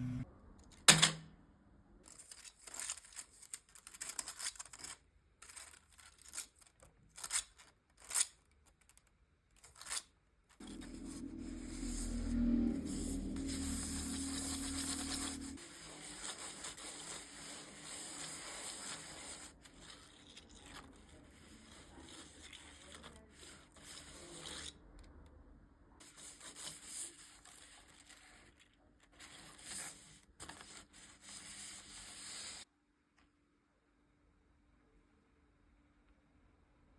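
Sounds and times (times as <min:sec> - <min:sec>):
music: 0:10.6 - 0:15.6.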